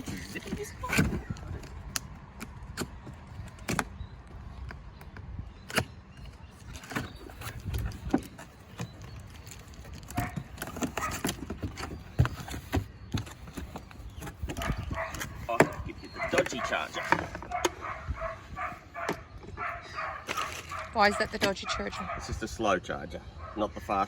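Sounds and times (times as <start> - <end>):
cardboard knocks and clicks: 10.0 - 17.8
packaging rustling: 20.2 - 21.0.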